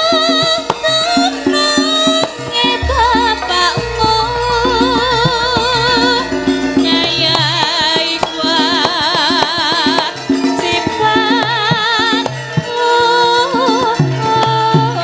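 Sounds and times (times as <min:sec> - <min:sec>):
woman singing with vibrato: 0:00.0 - 0:15.0
hand drum strokes: 0:00.4 - 0:12.8
metallophone tones: 0:02.7 - 0:08.1.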